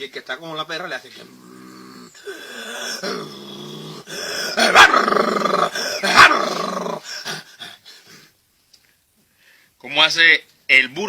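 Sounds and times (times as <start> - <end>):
man imitating dog growl: 1.2 - 7.8
man imitating dog barks: 4.5 - 7.5.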